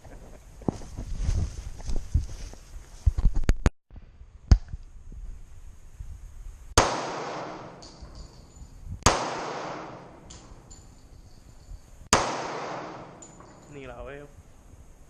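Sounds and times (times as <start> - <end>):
pistol shots with echo: 6.8 - 8.2, 9.0 - 10.6, 12.1 - 13.6.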